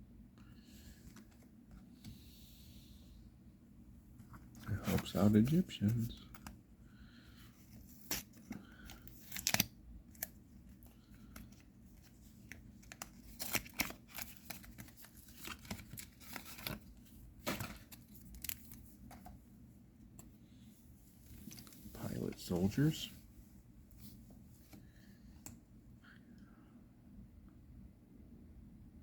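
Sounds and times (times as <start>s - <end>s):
cards handled: 4.2s - 6.6s, 7.6s - 19.4s
wrapper tearing and crinkling: 9.2s - 10.3s, 12.9s - 16.8s.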